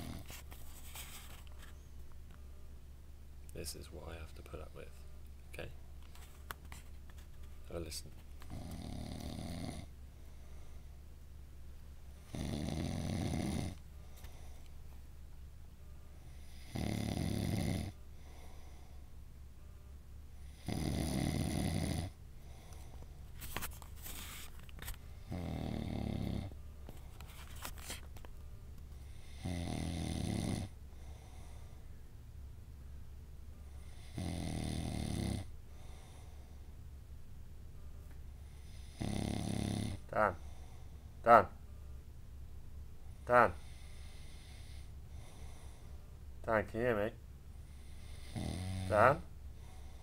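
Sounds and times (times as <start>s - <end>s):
man snoring heavily: 0.0s - 0.2s, 8.5s - 9.9s, 12.3s - 13.8s, 16.4s - 18.0s, 20.5s - 22.2s, 25.3s - 26.5s, 29.2s - 31.5s, 33.9s - 36.2s, 38.6s - 40.0s, 47.8s - 49.2s.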